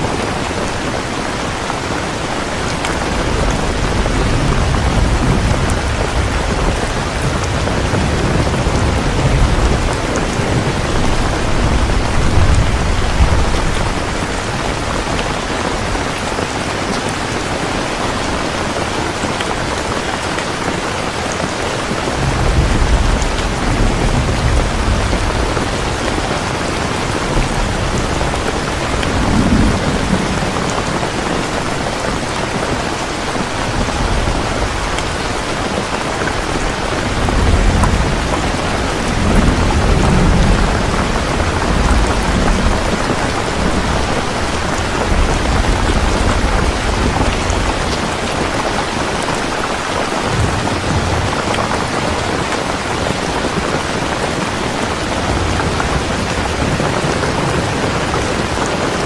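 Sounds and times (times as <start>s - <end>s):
rolling thunder: 0.0s - 17.3s, 21.9s - 54.2s
heavy rain falling: 0.0s - 59.0s.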